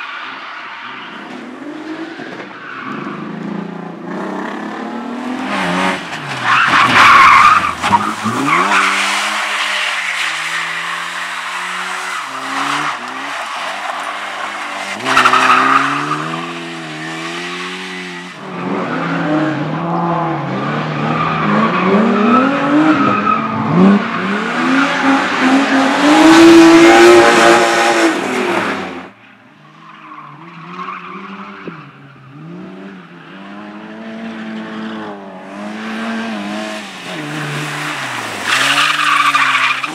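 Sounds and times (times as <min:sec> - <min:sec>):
tyres skidding and squealing: 0:00.0 - 0:39.9
race car engine revving: 0:18.4 - 0:29.2.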